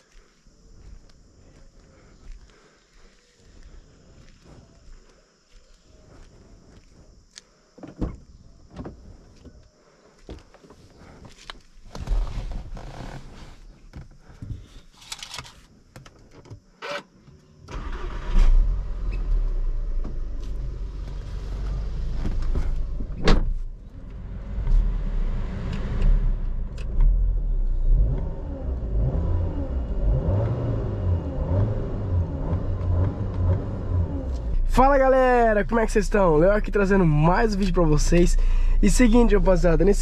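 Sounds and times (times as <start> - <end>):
car engine starting and running: 17.6 - 40.0.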